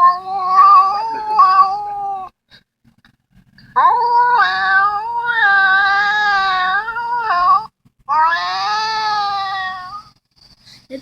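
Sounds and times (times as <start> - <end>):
cat yowling: 0.0 - 2.3, 3.8 - 10.1.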